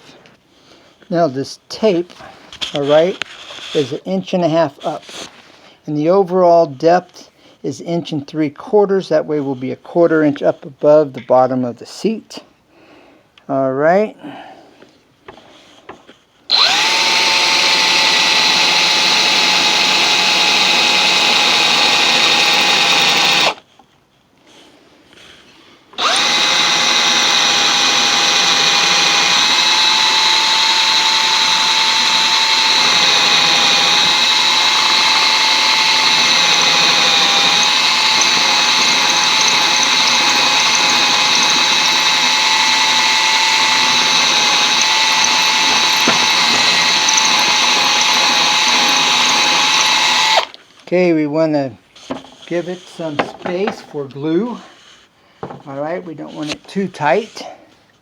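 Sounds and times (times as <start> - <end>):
electric drill whining: 16.5 - 23.7, 26.0 - 50.6.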